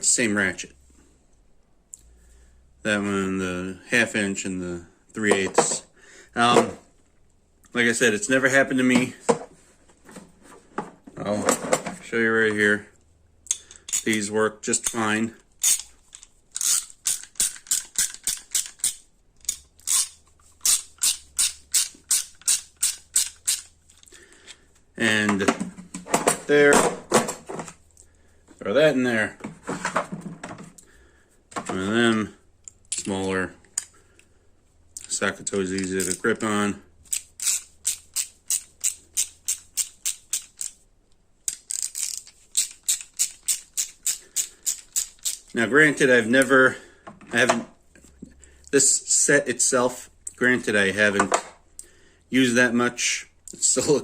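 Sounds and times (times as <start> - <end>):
socket ratchet buzzing: 15.6 - 23.8, 37.1 - 40.8, 41.5 - 45.5.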